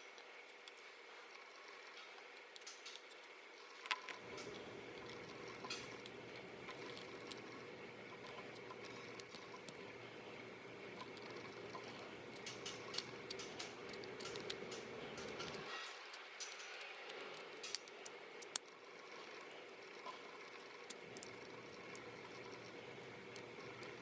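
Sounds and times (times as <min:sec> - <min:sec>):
faint steady hum: 0:00.0 - 0:24.0
light clicks and taps of tools: 0:01.9 - 0:07.4, 0:11.0 - 0:18.8.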